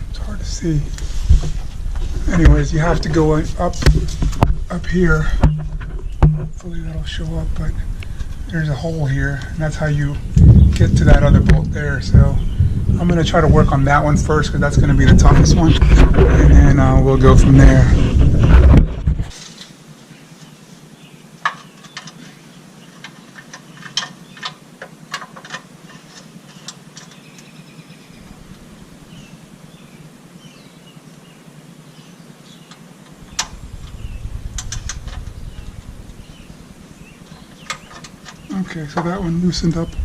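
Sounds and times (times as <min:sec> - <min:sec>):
low rumble: 0:00.0 - 0:19.3, 0:33.2 - 0:37.3.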